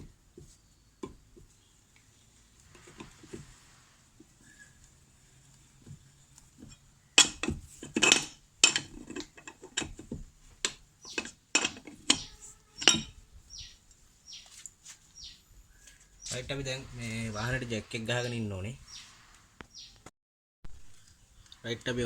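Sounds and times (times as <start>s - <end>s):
metal tools clinking and knocking: 6.6s - 13.2s.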